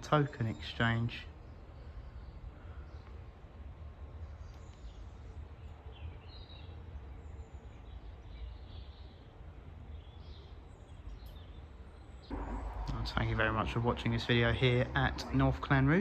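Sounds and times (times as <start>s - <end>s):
small birds chirping: 0.0s - 16.0s
low steady rumble: 7.2s - 16.0s.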